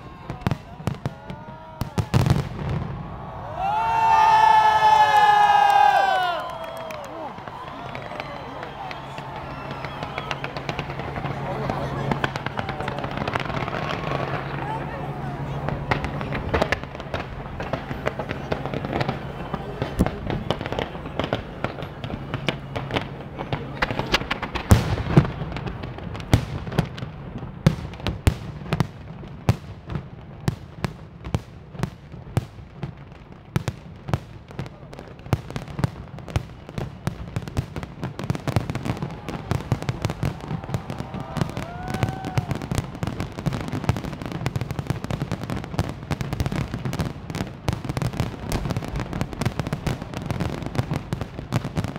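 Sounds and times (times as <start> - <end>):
fireworks bangs and crackling: 0.0 - 51.9.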